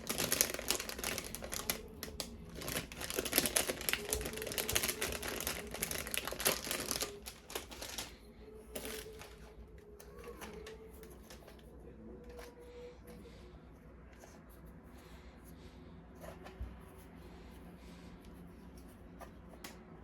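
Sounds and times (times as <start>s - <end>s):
packaging crinkling: 0.0s - 9.4s.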